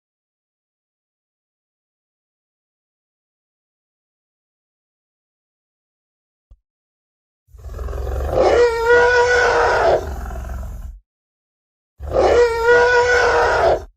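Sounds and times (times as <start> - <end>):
dinosaur roar: 7.6 - 11.0, 12.0 - 13.9.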